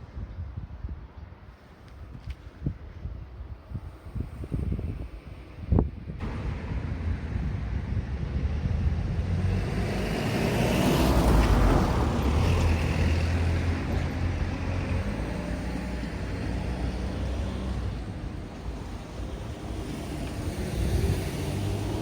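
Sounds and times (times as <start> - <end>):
vehicle engine driving past: 6.2 - 22.0.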